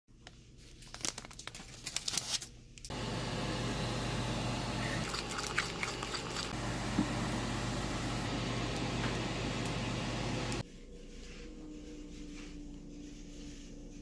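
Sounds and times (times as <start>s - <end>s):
steady background hum: 2.9s - 10.7s.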